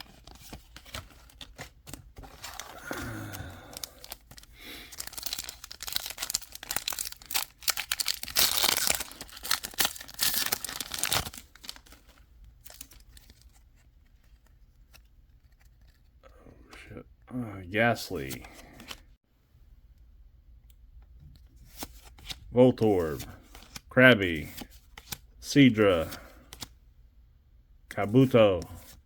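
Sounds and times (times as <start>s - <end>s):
cards being handled: 0.0s - 16.8s, 18.1s - 19.0s, 21.1s - 26.7s, 28.0s - 29.0s
foil wrapper crinkling and tearing: 2.2s - 13.3s.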